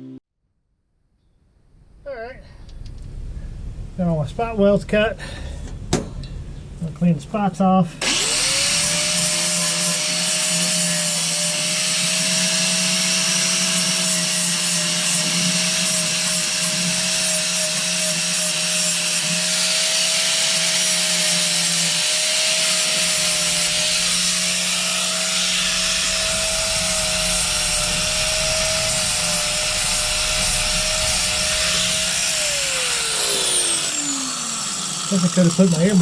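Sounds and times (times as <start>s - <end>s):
power grinder grinding metal: 8.0s - 36.0s.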